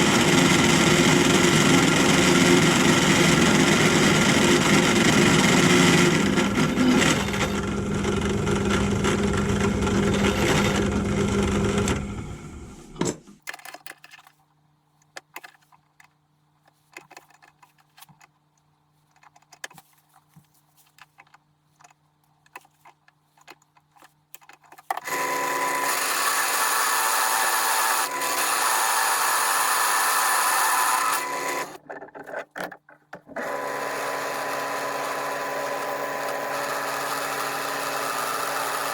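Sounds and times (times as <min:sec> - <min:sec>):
pillar drill cutting metal: 0:00.0 - 0:12.2, 0:25.0 - 0:31.8, 0:33.4 - 0:38.9.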